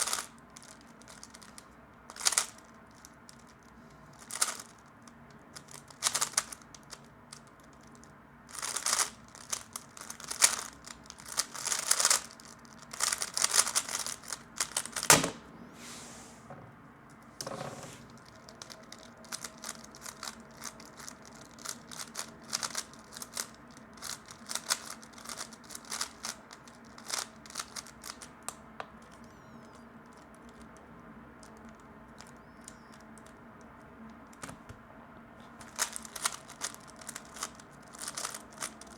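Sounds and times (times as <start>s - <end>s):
puzzle cube clicking: 1.4s - 2.5s, 8.5s - 12.3s, 12.9s - 15.1s, 18.6s - 26.4s, 35.6s - 38.8s.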